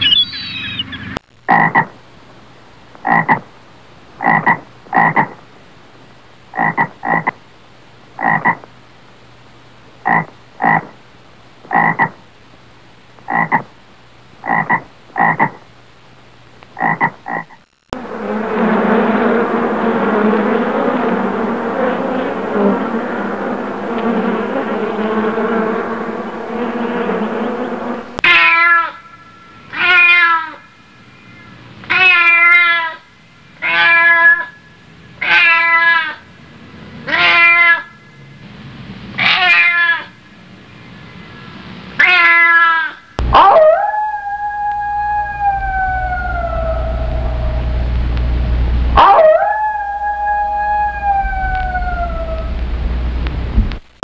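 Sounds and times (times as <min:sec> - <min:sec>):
bees buzzing: 0:16.8 - 0:28.2, 0:44.8 - 0:49.1
cat yowling: 0:28.2 - 0:29.0, 0:29.7 - 0:30.6, 0:31.9 - 0:33.0, 0:33.6 - 0:34.5, 0:35.2 - 0:36.2, 0:37.1 - 0:37.9, 0:39.2 - 0:40.1, 0:42.0 - 0:47.8, 0:49.0 - 0:52.6
wolf howling: 0:43.2 - 0:53.1.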